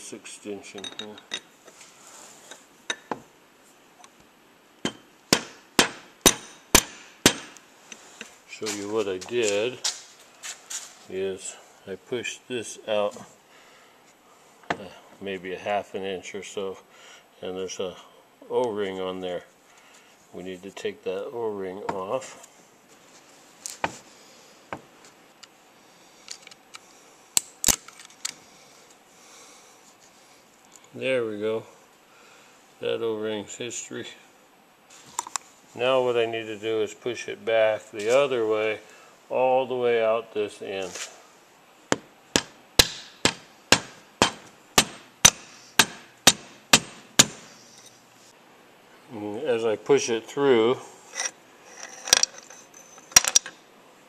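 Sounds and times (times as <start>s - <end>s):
hammer striking metal shaft: 42.4s - 47.4s.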